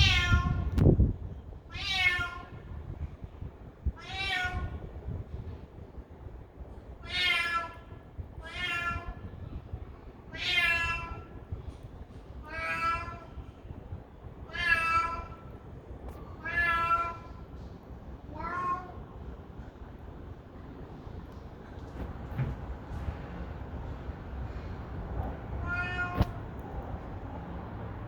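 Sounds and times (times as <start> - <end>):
cat meowing: 0.0 - 0.7, 1.7 - 2.6, 4.0 - 4.8, 7.0 - 9.3, 10.3 - 11.4, 12.4 - 13.4, 14.5 - 15.5, 16.4 - 17.4, 18.3 - 19.0, 25.6 - 26.4
steady low rumble: 0.0 - 28.0.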